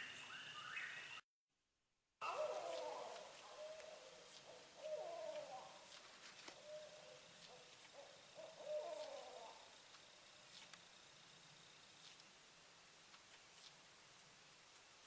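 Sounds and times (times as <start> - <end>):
owl calling: 2.2 - 9.7.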